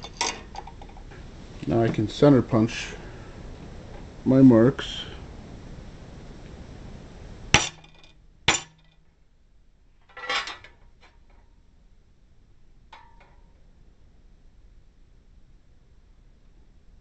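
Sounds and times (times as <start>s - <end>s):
center punch striking metal: 7.5s - 9.0s.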